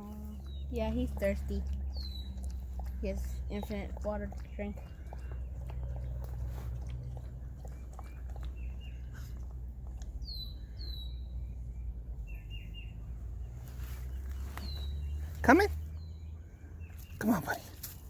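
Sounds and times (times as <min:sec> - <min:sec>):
birds chirping: 0:00.0 - 0:18.0
dog lapping water: 0:00.7 - 0:10.4.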